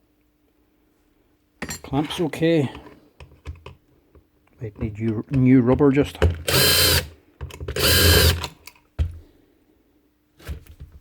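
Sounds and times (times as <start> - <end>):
power tool motor bursts: 6.5 - 7.1, 7.7 - 8.5.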